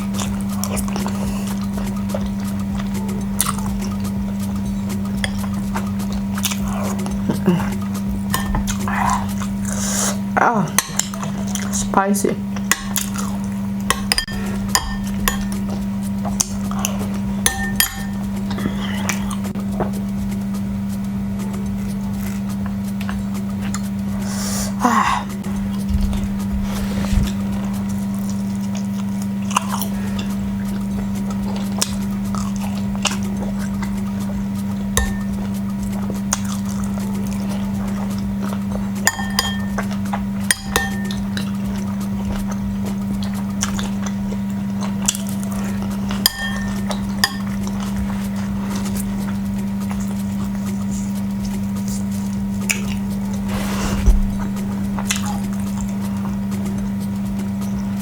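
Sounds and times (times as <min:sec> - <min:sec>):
steady low hum: 0:00.0 - 0:58.0
dishes and cutlery clinking: 0:00.1 - 0:09.5, 0:10.8 - 0:11.9, 0:12.6 - 0:20.0, 0:34.8 - 0:35.6, 0:36.3 - 0:42.6, 0:44.8 - 0:49.1
noisy rustle: 0:25.5 - 0:28.4, 0:53.4 - 0:55.2.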